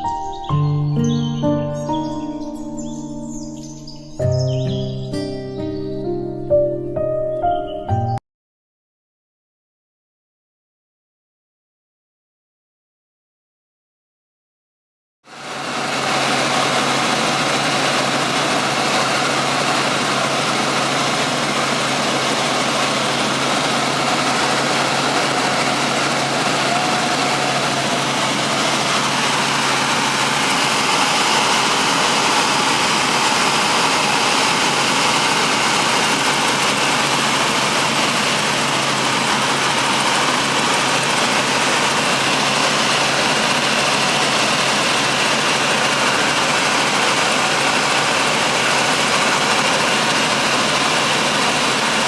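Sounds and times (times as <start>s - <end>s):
helicopter engine and rotors: 15.3s - 52.0s.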